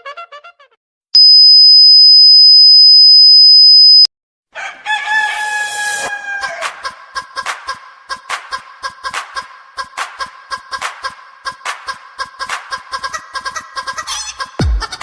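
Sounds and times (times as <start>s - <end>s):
high-pitched electronic beep: 1.2s - 4.1s.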